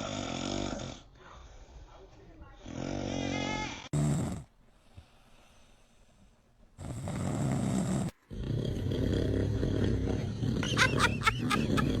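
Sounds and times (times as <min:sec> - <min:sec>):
man snoring: 0:00.0 - 0:01.0, 0:02.7 - 0:04.5, 0:06.8 - 0:12.0.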